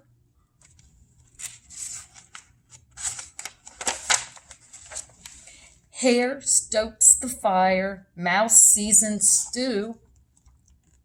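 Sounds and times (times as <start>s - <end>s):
paper pages rustling: 0.6s - 5.7s.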